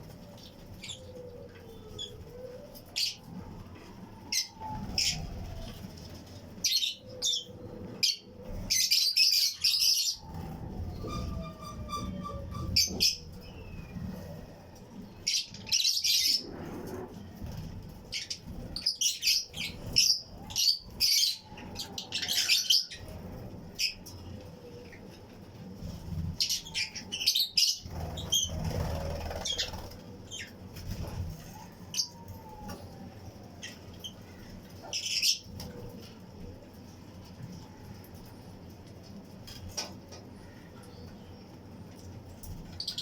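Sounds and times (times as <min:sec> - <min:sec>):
wings flapping: 0:27.8 - 0:31.5.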